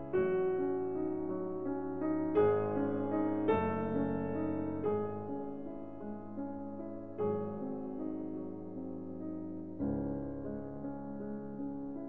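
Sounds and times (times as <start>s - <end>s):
slow piano chords: 0.0s - 12.0s.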